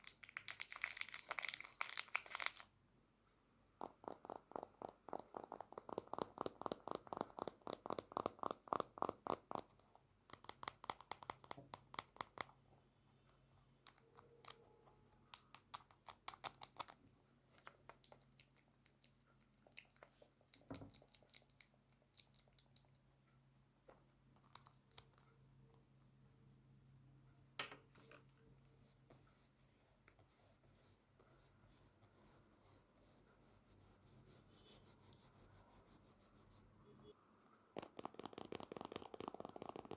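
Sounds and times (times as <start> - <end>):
scratchy makeup brush strokes: 28.0 - 36.7.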